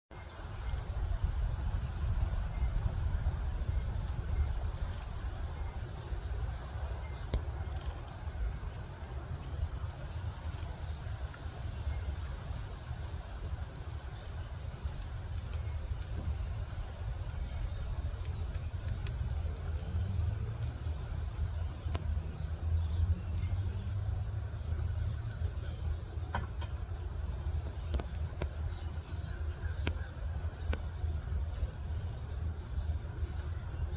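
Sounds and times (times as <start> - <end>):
crickets trilling: 0.1 - 33.9
faint clicks: 17.2 - 20.8.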